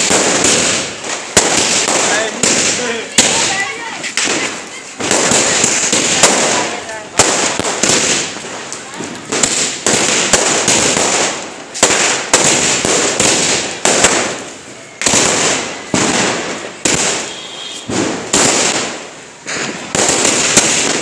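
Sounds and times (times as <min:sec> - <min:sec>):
firework cake bangs: 0:00.0 - 0:14.4, 0:15.0 - 0:21.0.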